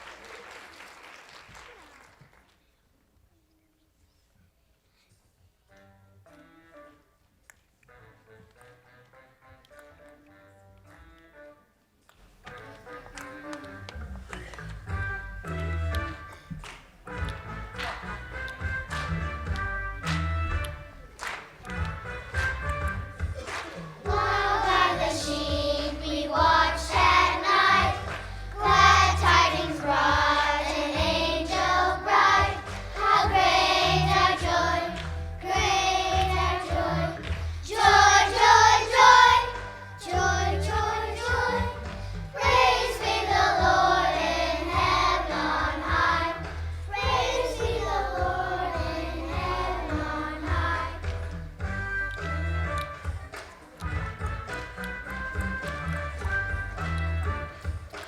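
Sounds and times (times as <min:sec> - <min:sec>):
musical accompaniment: 0:05.6 - 0:58.0
children's choir singing: 0:23.4 - 0:51.3.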